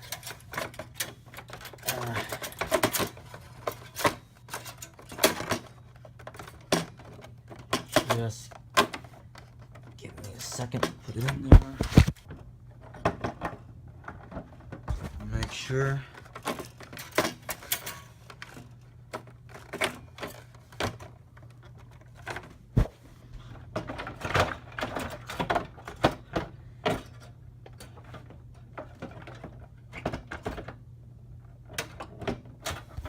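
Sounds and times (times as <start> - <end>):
clicks and knocks of handling: 0.0 - 15.5, 16.1 - 22.9, 23.5 - 30.8, 31.5 - 33.0
steady low hum: 10.0 - 12.7, 14.7 - 16.4.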